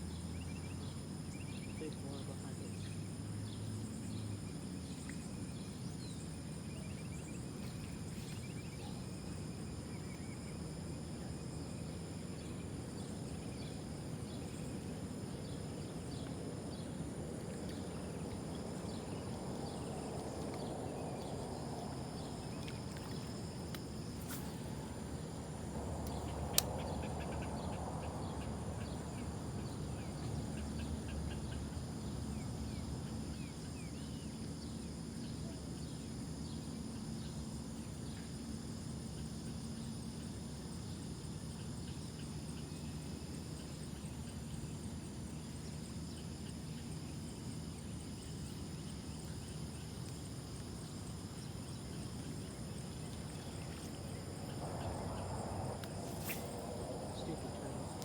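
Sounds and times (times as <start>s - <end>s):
insects singing: 17.7s - 37.3s, 40.6s - 58.0s.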